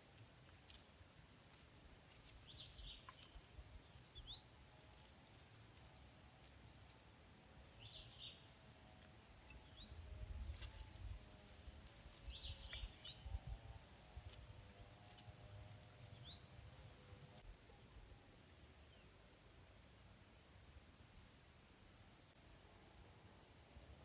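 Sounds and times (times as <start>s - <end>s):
birds chirping: 0.0s - 17.4s.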